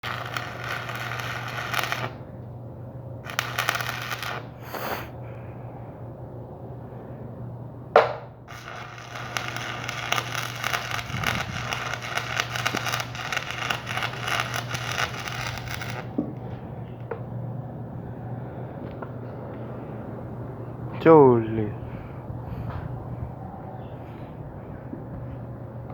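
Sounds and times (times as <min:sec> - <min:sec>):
welding arc crackling: 0:00.0 - 0:02.3, 0:03.2 - 0:05.1, 0:08.5 - 0:16.2
low hum: 0:00.0 - 0:21.0.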